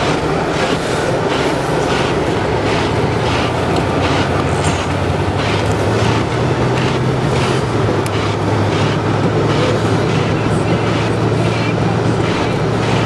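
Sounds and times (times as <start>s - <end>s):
road and wind noise: 0.0s - 13.0s
vehicle engine humming: 0.0s - 13.0s.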